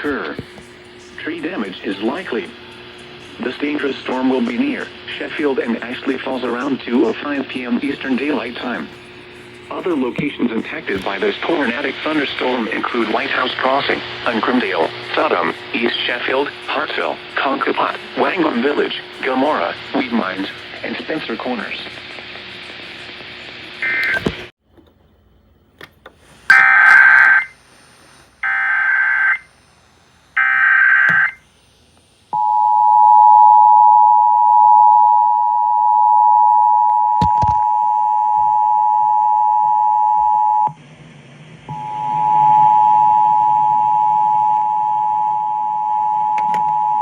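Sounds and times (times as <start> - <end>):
background hiss and hum: 0.0 - 47.0
two-tone attention signal: 26.5 - 27.5, 41.7 - 47.0
warbling data tones: 26.5 - 27.6.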